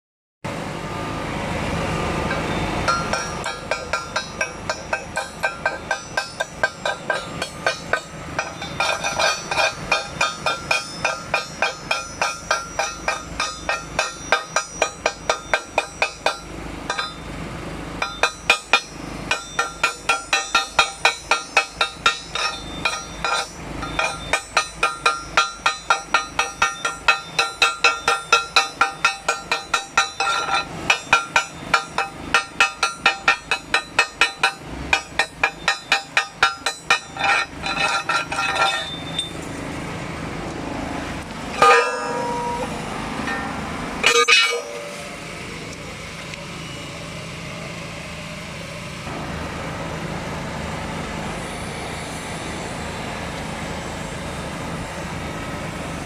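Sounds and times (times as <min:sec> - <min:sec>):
hammer tapping on steel: 0:02.3 - 0:17.2, 0:18.0 - 0:39.3.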